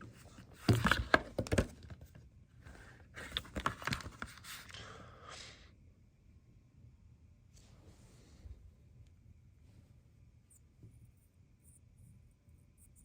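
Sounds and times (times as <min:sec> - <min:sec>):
soft rustle: 0:07.5 - 0:08.8.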